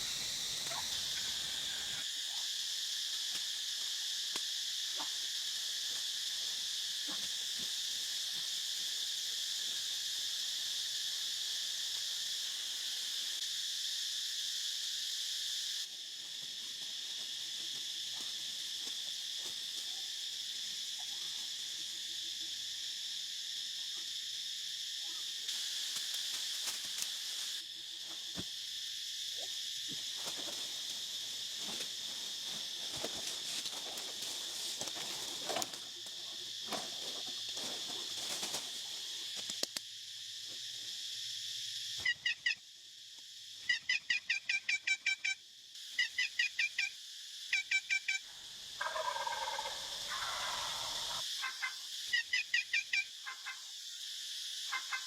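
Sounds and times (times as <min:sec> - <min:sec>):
turkey call yelps: 0:00.6 - 0:01.9, 0:48.8 - 0:53.6.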